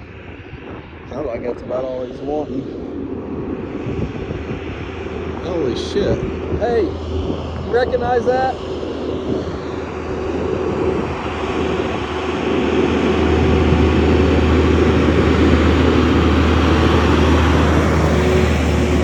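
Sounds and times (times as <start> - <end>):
truck engine pulling uphill: 4.9 - 19.0.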